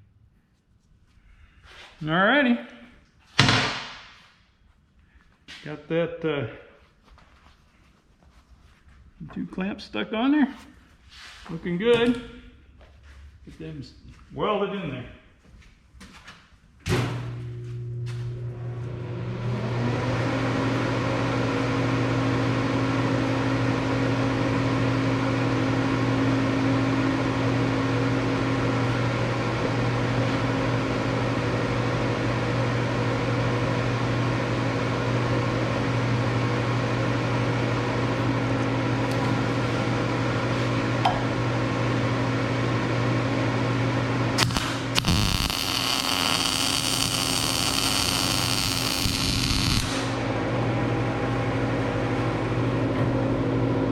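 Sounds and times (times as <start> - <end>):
welder transformer and fan humming: 17.1 - 53.9
bright hiss: 44.4 - 50.2.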